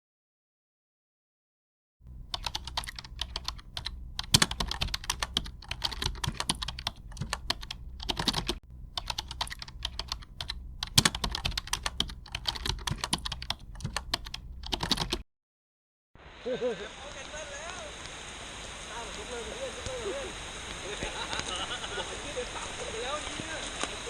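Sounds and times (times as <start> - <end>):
keyboard typing: 2.0 - 15.2.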